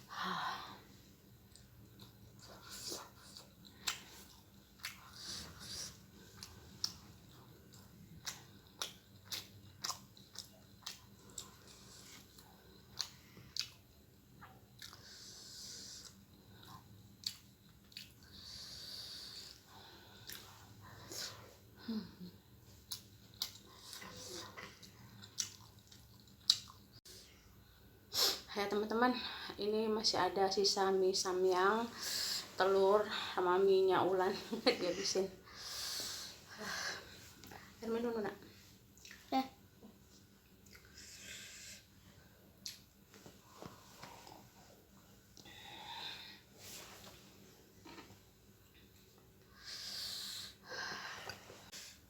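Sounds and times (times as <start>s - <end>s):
wet chewing and mouth smacks: 1.5s - 5.2s, 6.3s - 15.0s, 16.0s - 18.2s, 22.8s - 27.0s, 38.9s - 39.3s, 40.2s - 41.0s, 42.6s - 43.3s
breathy inhaling hisses: 35.5s - 37.2s, 49.5s - 52.0s.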